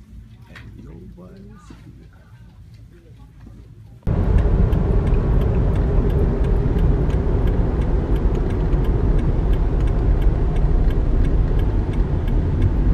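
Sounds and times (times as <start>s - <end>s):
car driving rumble: 4.0s - 12.9s
faint light ticks: 4.4s - 12.9s.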